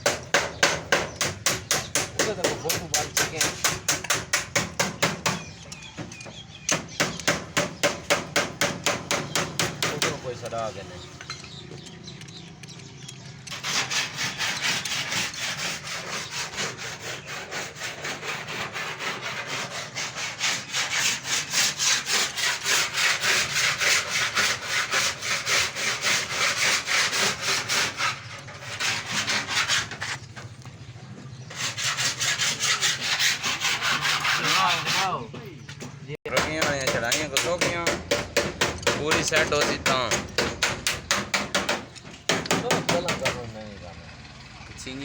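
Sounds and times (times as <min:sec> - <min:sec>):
hand tool scraping strokes: 0:13.4 - 0:30.5, 0:31.5 - 0:35.2.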